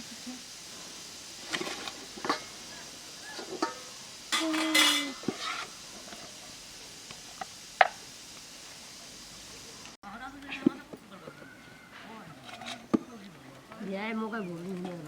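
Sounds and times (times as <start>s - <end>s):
metal utensils clinking on a pan: 1.5s - 2.6s, 3.3s - 5.7s, 12.4s - 13.0s.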